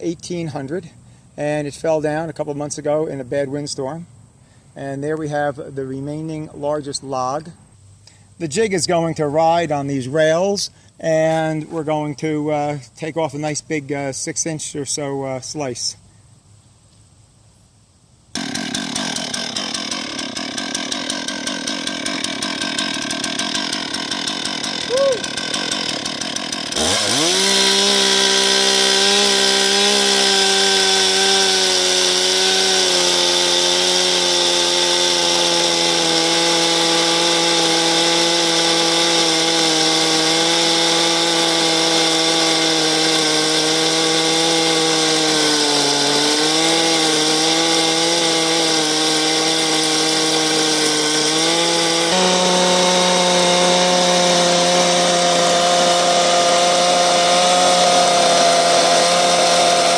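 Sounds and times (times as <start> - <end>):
chainsaw cutting a log: 0.0 - 1.7, 18.3 - 59.9.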